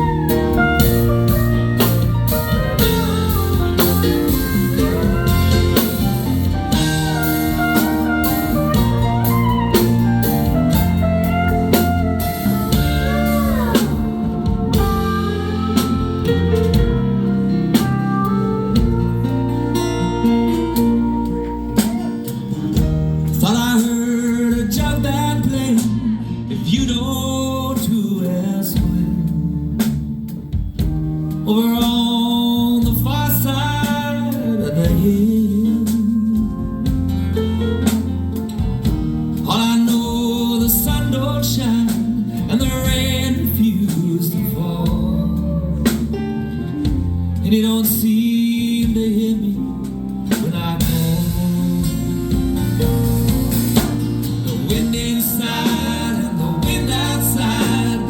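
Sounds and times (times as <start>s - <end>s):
lead guitar solo: 0.0s - 23.3s
bass guitar: 0.0s - 58.0s
drum kit: 0.0s - 58.0s.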